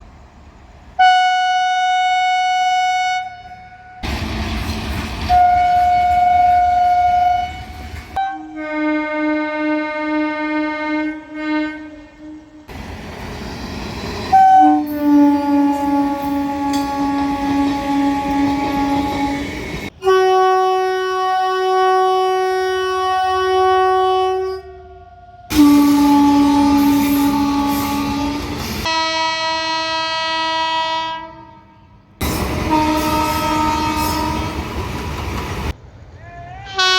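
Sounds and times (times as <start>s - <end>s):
rumbling passing train: 0.0s - 36.9s
electric train horn blasts: 1.0s - 4.1s, 5.3s - 12.8s, 14.3s - 34.7s, 36.7s - 36.9s.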